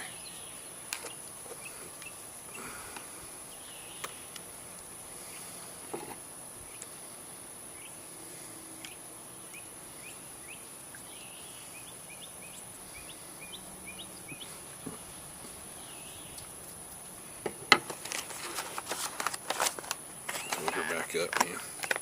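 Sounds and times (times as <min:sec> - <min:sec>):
bird chirping: 0:00.0 - 0:04.4, 0:07.7 - 0:08.0, 0:08.8 - 0:16.7, 0:20.3 - 0:22.0
steady high hiss: 0:00.0 - 0:22.0
sharp clicks and knocks handling: 0:17.4 - 0:22.0.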